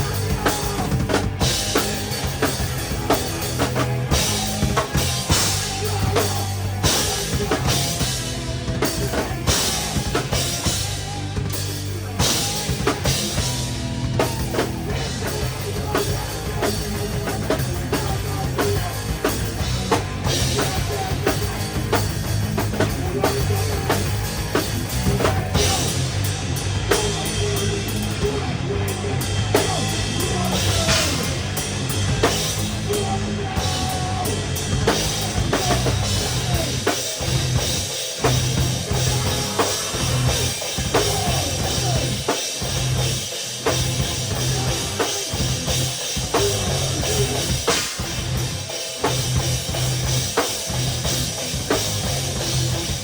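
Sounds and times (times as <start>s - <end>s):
bass guitar: 0.0s - 53.0s
distorted guitar: 0.0s - 53.0s
fast drumming: 0.0s - 53.0s.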